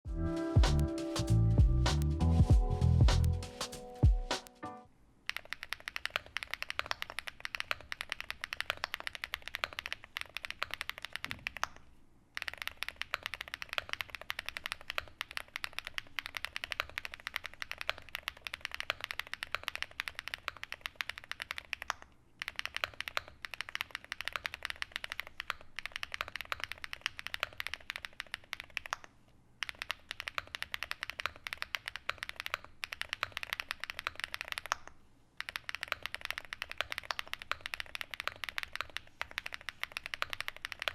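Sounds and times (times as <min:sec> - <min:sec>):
fast typing on mechanical keyboard: 0:05.3 - 0:11.8, 0:12.4 - 0:40.9.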